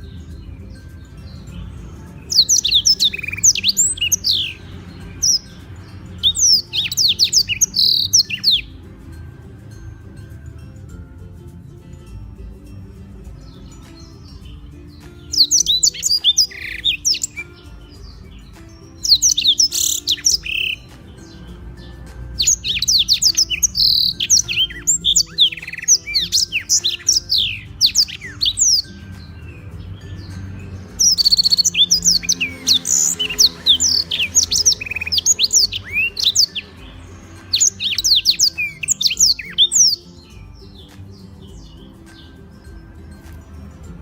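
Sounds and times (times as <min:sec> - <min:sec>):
canary singing trills and chatter: 0:00.0 - 0:44.0
faint background music: 0:00.0 - 0:44.0.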